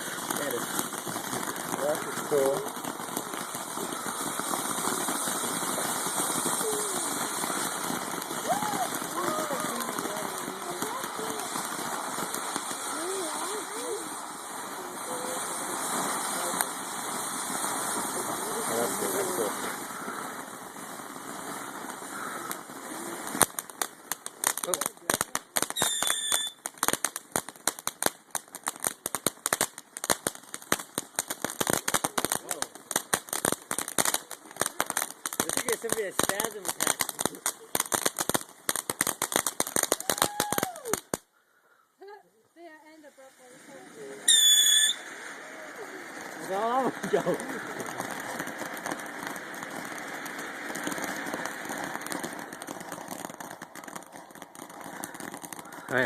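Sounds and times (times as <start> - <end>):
fireworks crackling: 0.0 - 41.4, 42.0 - 56.0
high firework whistle: 3.8 - 11.3, 25.7 - 26.6, 39.8 - 41.2, 44.2 - 46.4.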